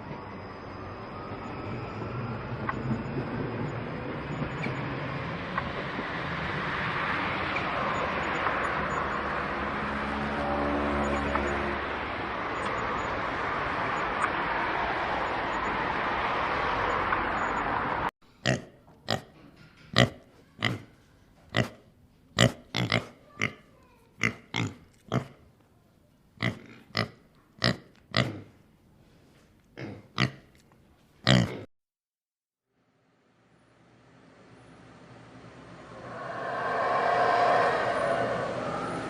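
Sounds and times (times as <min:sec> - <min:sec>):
pig grunting: 0:18.4 - 0:19.3, 0:22.4 - 0:25.4, 0:26.4 - 0:28.6, 0:29.8 - 0:30.5, 0:31.3 - 0:31.7
steady rushing noise: 0:35.2 - 0:39.0.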